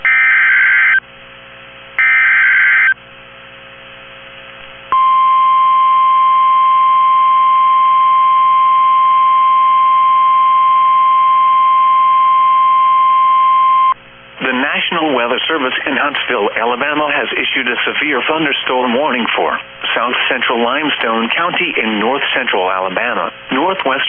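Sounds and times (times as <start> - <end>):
steady warning alarm tone: 0.0 - 1.0, 2.0 - 3.0, 4.9 - 14.0.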